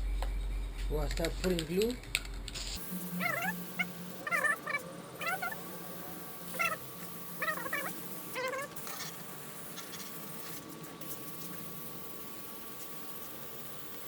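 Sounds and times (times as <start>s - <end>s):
faint steady hum: 0.0s - 14.0s
animal calls: 3.2s - 5.6s, 6.5s - 6.8s, 7.4s - 8.8s.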